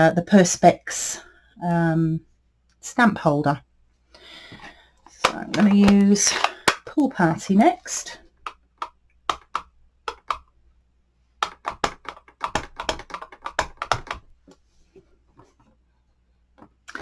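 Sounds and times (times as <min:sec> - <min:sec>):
plastic case clicking: 0:05.1 - 0:07.4, 0:08.4 - 0:10.4, 0:11.4 - 0:14.2
ink pad tapping on stamp: 0:08.5 - 0:10.4, 0:11.4 - 0:14.2.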